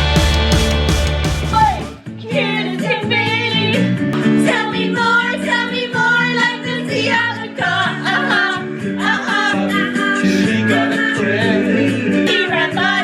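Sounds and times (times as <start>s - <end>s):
guitar: 0.0s - 13.0s
person singing: 0.0s - 13.0s.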